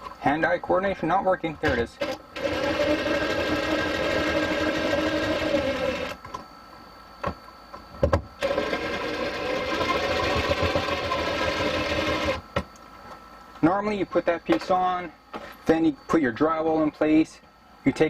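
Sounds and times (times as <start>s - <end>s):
drill clicks: 1.7s - 6.2s
power drill driving a screw: 2.0s - 6.2s, 8.4s - 12.4s.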